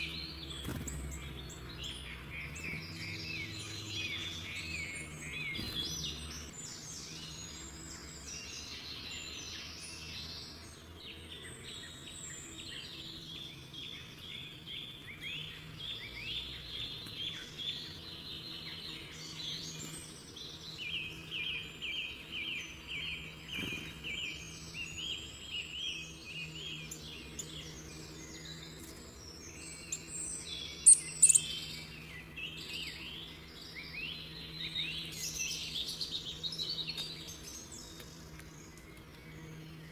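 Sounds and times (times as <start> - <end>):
birds singing and chirping: 0.0 - 39.9
fast bird trill: 30.7 - 31.7
sharp high bird chirps: 30.7 - 31.7.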